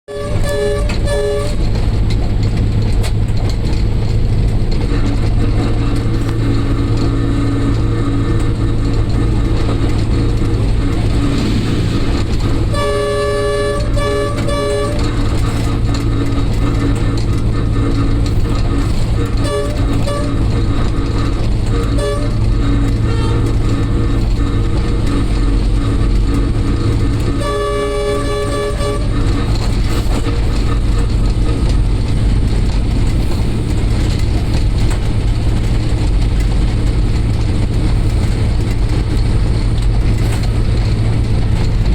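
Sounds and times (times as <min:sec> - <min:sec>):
diesel locomotive engine drone: 0:00.0 - 0:41.9
train horn short blasts: 0:00.1 - 0:01.8, 0:04.8 - 0:31.9.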